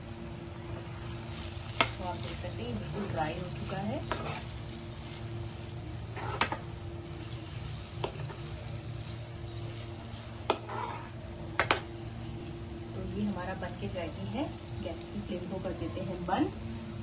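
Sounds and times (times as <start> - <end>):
light sizzle: 0.0 - 17.0
steady low hum: 0.0 - 17.0
spoon stirring in a pan: 0.7 - 12.4.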